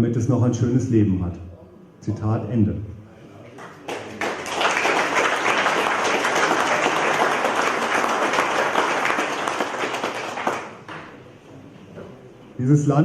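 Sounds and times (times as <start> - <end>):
audience applauding: 3.6 - 11.2.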